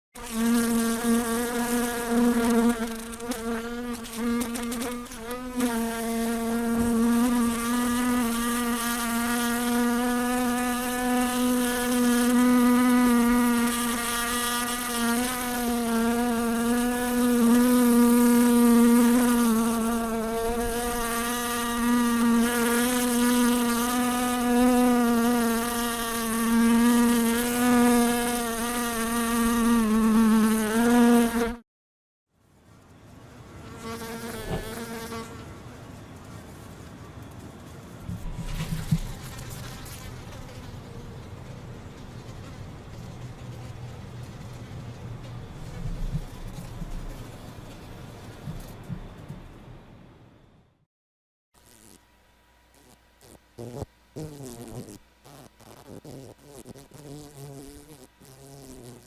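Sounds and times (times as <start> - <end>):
fly buzzing in flight: 0.2 - 31.6, 33.7 - 35.4, 51.6 - 52.0, 52.7 - 59.0.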